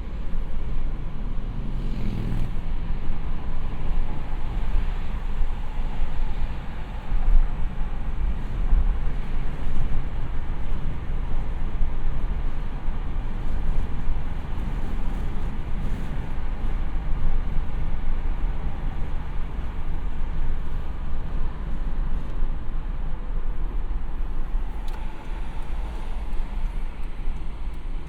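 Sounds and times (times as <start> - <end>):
car engine and road noise: 0.0 - 28.0.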